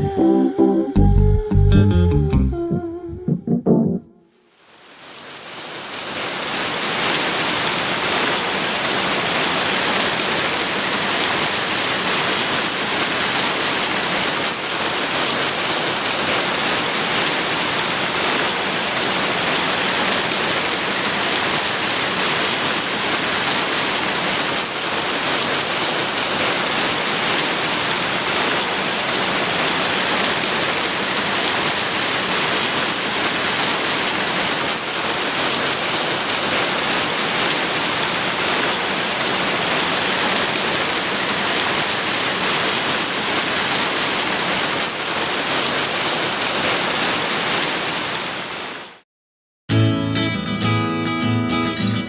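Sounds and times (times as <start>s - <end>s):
hiss of falling water: 4.4s - 49.0s.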